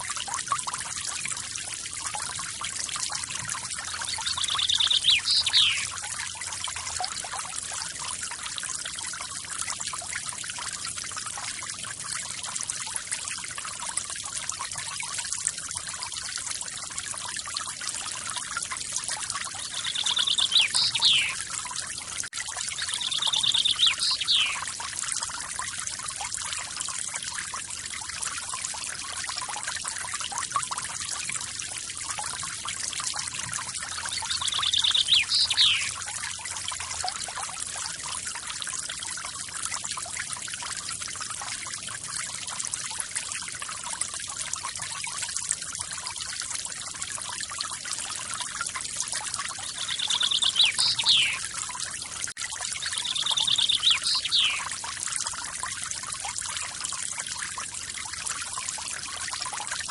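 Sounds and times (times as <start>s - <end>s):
bird trill and falling whistle: 4.3s - 5.9s, 19.9s - 21.4s, 22.9s - 24.6s, 34.3s - 36.0s, 49.8s - 51.4s, 52.9s - 54.6s.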